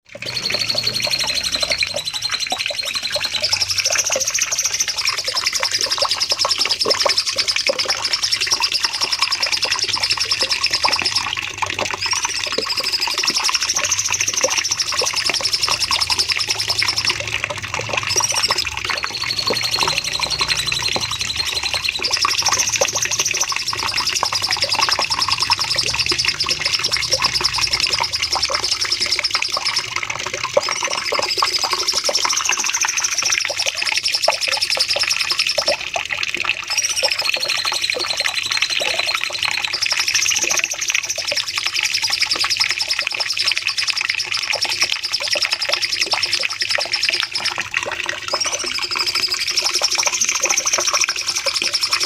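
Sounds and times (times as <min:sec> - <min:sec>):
songbird rapid trill: 0:00.1 - 0:11.4, 0:18.0 - 0:35.6.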